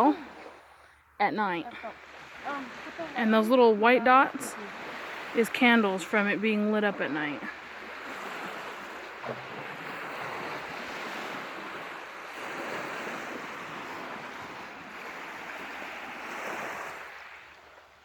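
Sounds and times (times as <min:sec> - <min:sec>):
waves washing onto a beach: 0:01.4 - 0:18.0.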